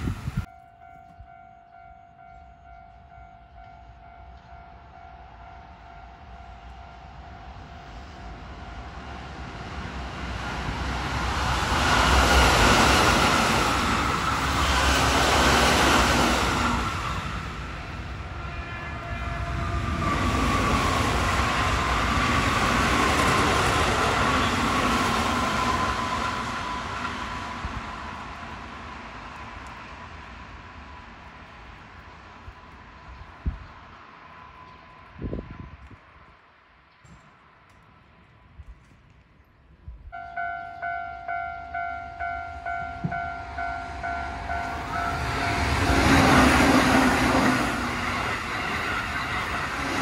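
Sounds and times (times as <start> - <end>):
electronic crossing bell: 0.5 - 6.5, 40.2 - 45.6
train wheels on rail: 2.2 - 50.0.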